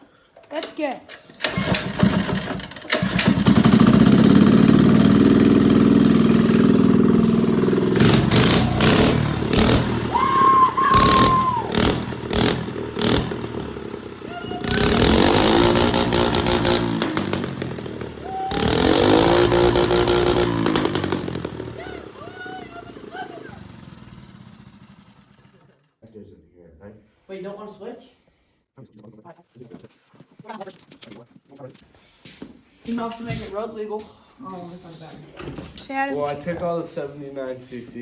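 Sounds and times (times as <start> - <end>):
mini bike engine revving: 1.3 - 25.8.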